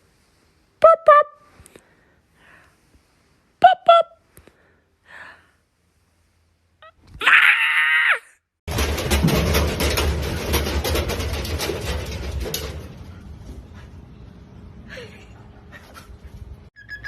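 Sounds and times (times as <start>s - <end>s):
high scream-like cry: 7.2s - 8.4s.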